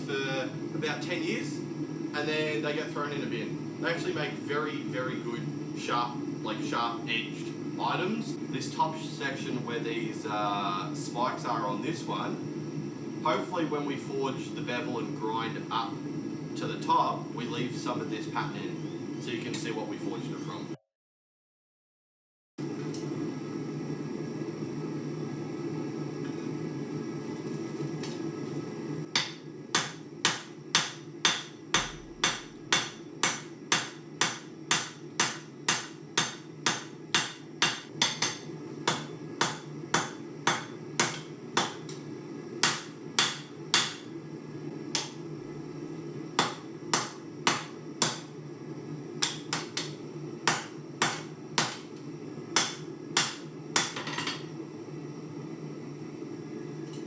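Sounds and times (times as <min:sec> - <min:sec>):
hammer striking metal on anvil: 0:29.2 - 0:42.0, 0:42.6 - 0:44.1, 0:44.9 - 0:45.2, 0:46.4 - 0:48.3, 0:49.2 - 0:51.9, 0:52.6 - 0:54.5.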